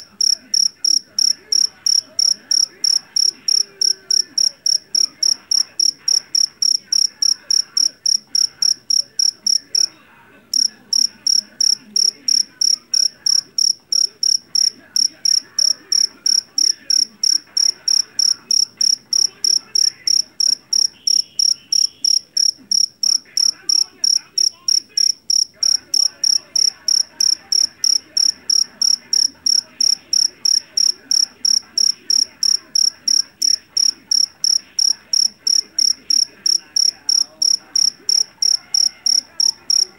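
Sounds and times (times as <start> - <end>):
cricket chirping: 0.0 - 9.9, 10.5 - 39.9.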